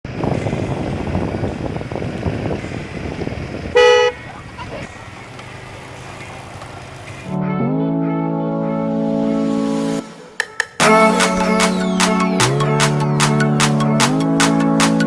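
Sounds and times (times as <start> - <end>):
car horn honk: 3.7 - 4.3
voices: 3.8 - 7.2.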